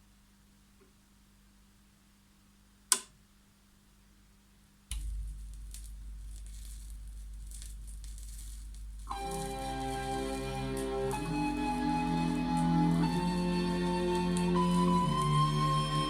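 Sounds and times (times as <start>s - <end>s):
record surface crackle: 4.8s - 16.0s
record groove rumble: 4.9s - 16.0s.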